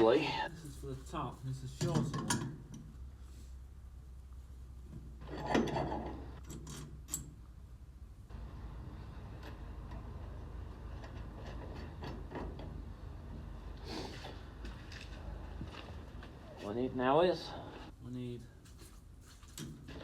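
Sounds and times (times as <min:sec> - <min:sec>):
metal clank: 0:01.8 - 0:02.9, 0:05.2 - 0:07.4.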